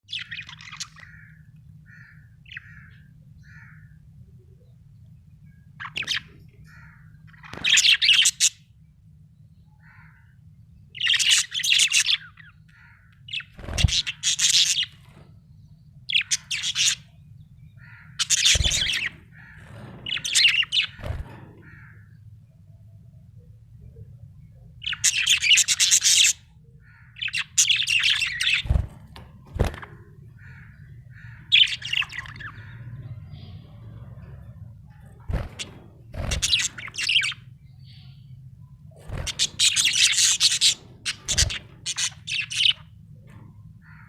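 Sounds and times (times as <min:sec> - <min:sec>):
budgerigar chirping and warbling: 0:35.1 - 0:38.1, 0:39.1 - 0:42.9.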